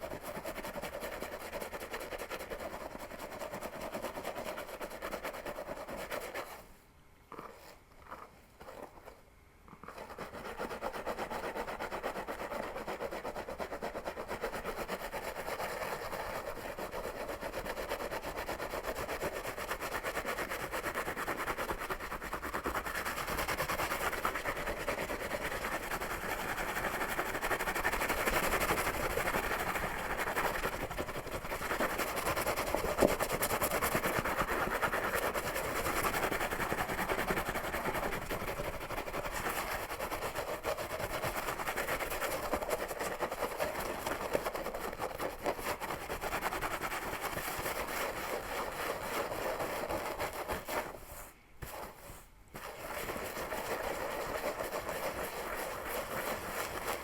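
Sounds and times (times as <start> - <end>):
fingernails scratching through hair: 13.5 - 57.0.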